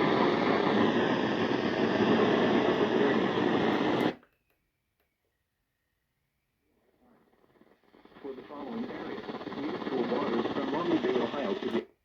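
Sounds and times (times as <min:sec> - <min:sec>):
radio static hiss: 0:00.0 - 0:04.2, 0:07.0 - 0:12.0.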